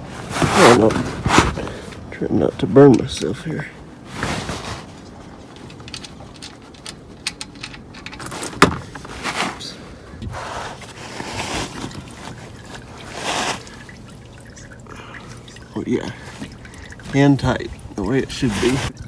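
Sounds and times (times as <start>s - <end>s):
tool clicks and handling noises: 5.0s - 9.1s.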